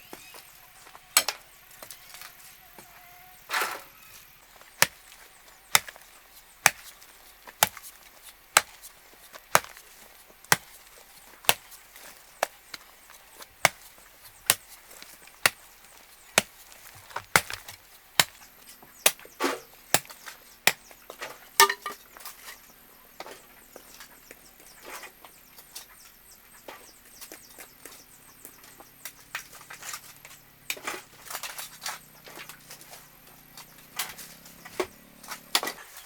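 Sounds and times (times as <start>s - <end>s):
hand tool chopping blows: 16.4s - 18.4s.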